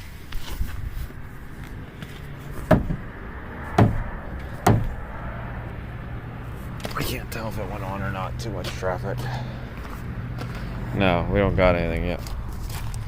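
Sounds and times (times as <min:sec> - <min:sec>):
hammer striking fuel tank: 0:02.7 - 0:03.0, 0:03.8 - 0:04.0, 0:04.6 - 0:04.9.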